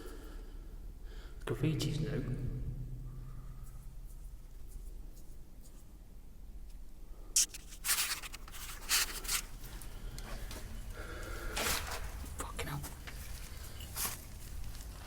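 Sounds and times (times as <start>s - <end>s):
footsteps on gritty floor: 7.5s - 15.0s.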